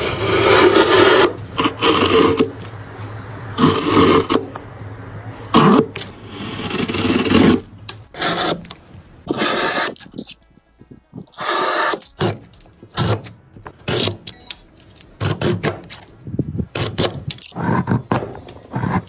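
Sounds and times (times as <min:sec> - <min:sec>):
hand tool scraping wood: 0:00.0 - 0:02.6, 0:08.2 - 0:10.4, 0:11.2 - 0:14.2.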